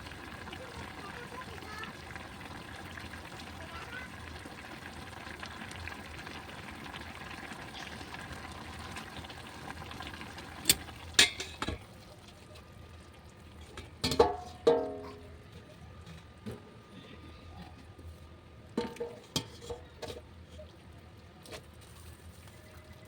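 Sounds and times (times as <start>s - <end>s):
food hissing in a pan: 0.0s - 10.7s.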